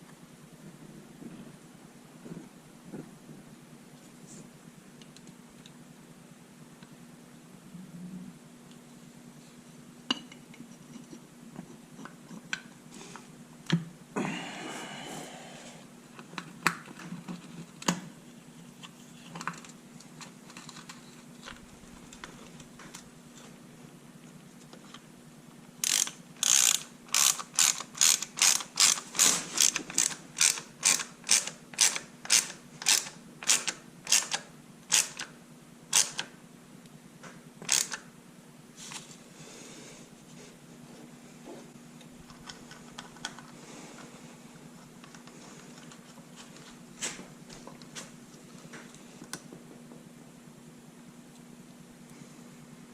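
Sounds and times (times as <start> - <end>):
socket ratchet clicking: 25.8 - 35.2, 35.9 - 36.2, 37.7 - 38.0.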